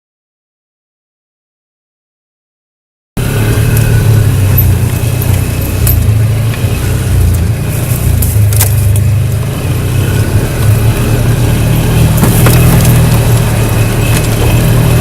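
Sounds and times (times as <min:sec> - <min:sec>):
atv engine droning: 0:03.2 - 0:15.0
sharp knocks and rattles: 0:10.6 - 0:15.0.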